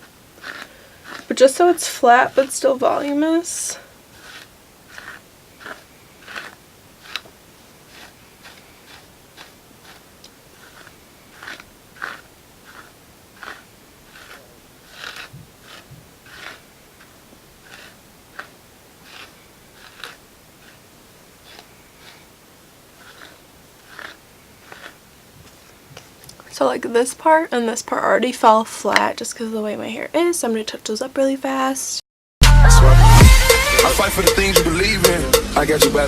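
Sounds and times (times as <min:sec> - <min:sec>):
hairbrush scratching through hair: 0:00.0 - 0:26.2.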